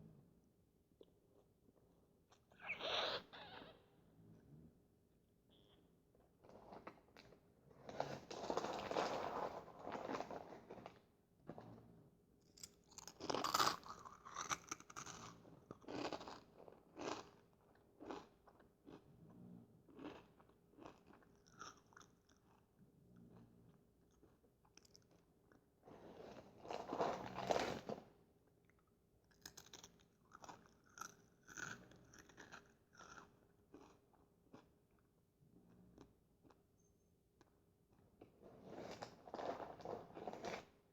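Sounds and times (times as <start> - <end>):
corn chips crunching: 12.9 - 16.4, 29.3 - 34.6.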